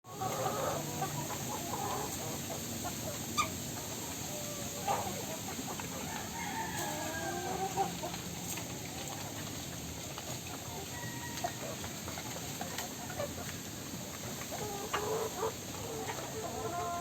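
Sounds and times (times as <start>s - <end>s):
chickens clucking: 0.1s - 17.0s
rooster crowing: 6.0s - 7.8s, 10.8s - 11.8s.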